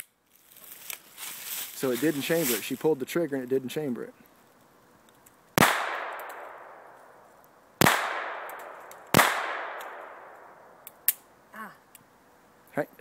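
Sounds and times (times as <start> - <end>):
pistol shots with echo: 5.6 - 6.9, 7.8 - 10.6.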